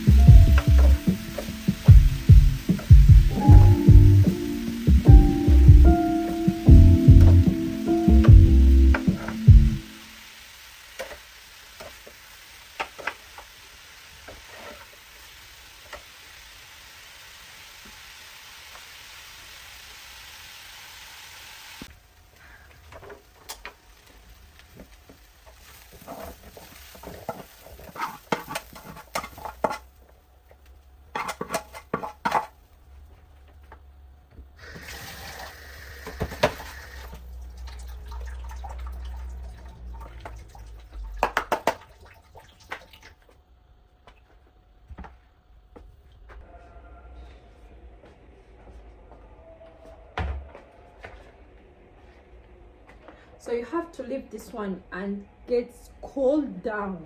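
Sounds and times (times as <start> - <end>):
food frying in a pan: 0.0 - 33.1, 34.6 - 43.3.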